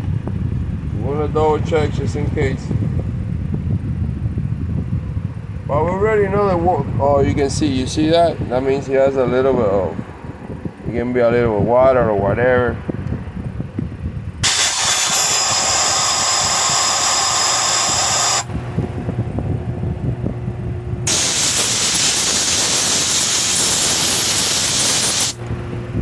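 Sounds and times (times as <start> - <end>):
high whistle: 14.4 - 18.5
pressurised gas hissing: 14.4 - 18.5, 21.1 - 25.4.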